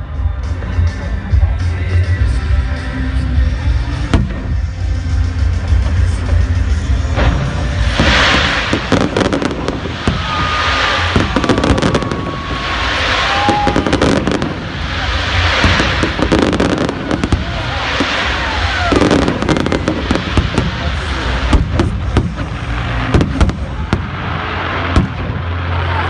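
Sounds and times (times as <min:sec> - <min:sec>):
fireworks bangs and crackling: 0:00.0 - 0:26.0
low rumble: 0:02.2 - 0:26.0
thin firework whistles: 0:07.2 - 0:23.9.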